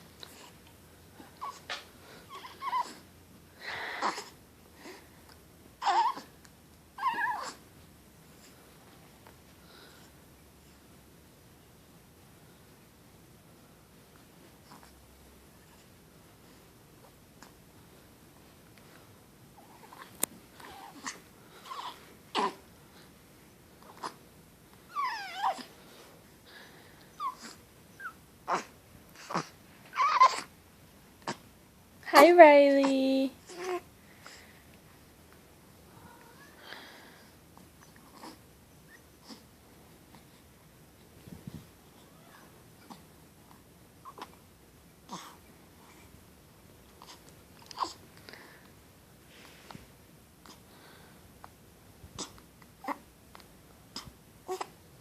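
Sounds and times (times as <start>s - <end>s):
animal whining: 2.3s - 3.0s, 7.0s - 7.6s, 24.9s - 25.7s, 27.2s - 30.5s.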